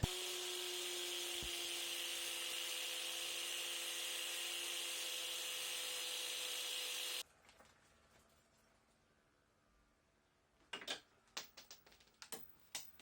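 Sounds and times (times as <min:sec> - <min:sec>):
electric motor whining: 0:00.0 - 0:07.2.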